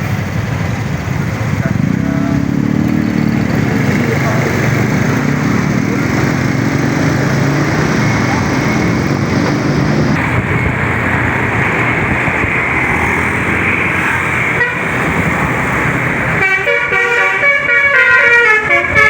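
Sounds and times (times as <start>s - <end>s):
loud steady rushing noise: 0.0s - 19.0s
bus horn playing a melody: 14.3s - 19.0s.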